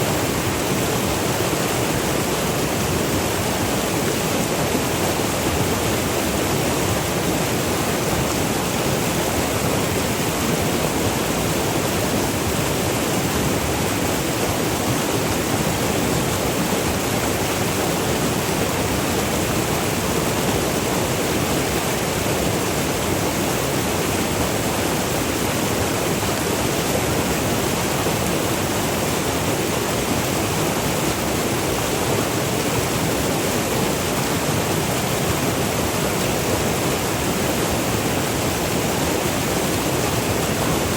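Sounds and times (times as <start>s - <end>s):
river water rushing over waterfalls: 0.0s - 40.9s.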